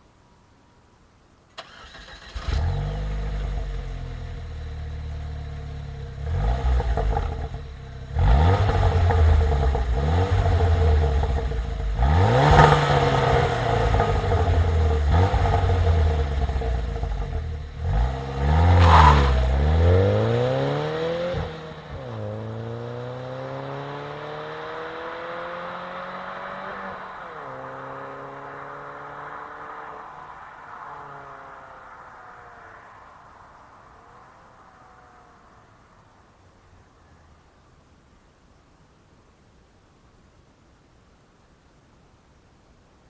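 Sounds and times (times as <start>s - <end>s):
car engine idling: 1.6s - 23.2s
car engine revving: 1.6s - 35.4s
car engine starting: 1.6s - 36.5s.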